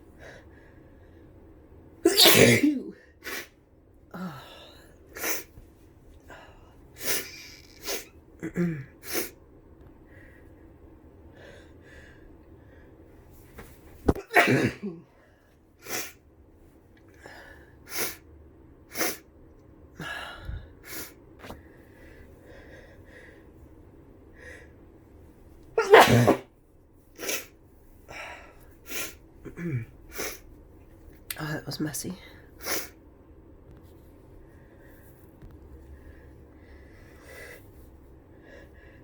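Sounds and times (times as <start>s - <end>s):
person sneezing: 2.1s - 3.5s, 7.0s - 9.3s, 14.1s - 15.0s, 25.8s - 26.5s.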